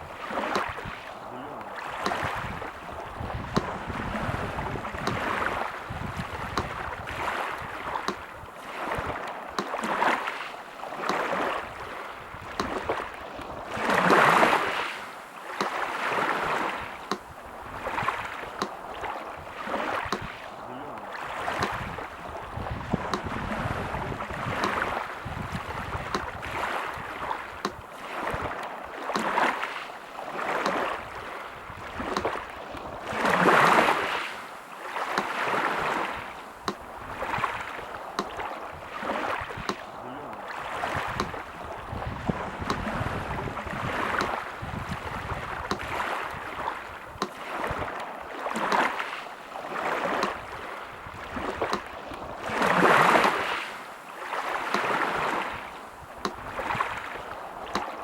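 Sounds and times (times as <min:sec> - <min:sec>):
sea surf washing in: 0:00.0 - 0:58.0.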